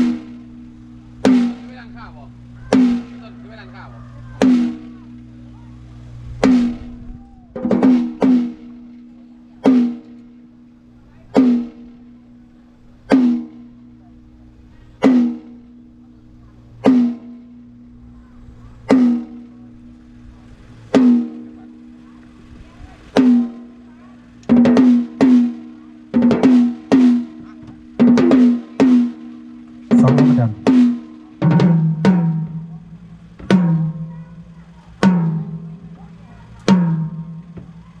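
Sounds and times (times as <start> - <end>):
drum hits ringing: 0.0 - 3.3, 4.4 - 5.5, 6.4 - 7.0, 7.6 - 12.4, 13.1 - 13.9, 16.8 - 17.8, 18.9 - 20.1, 24.5 - 36.0.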